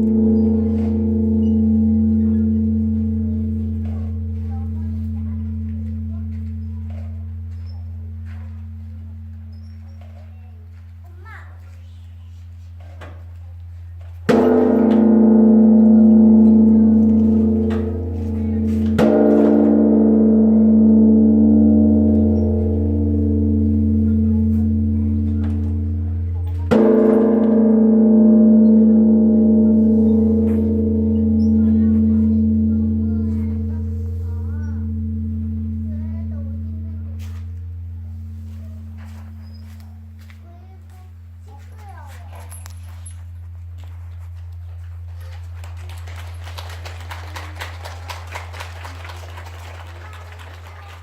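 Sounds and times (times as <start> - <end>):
large bronze temple bell struck: 0.0 - 10.7, 14.2 - 41.4.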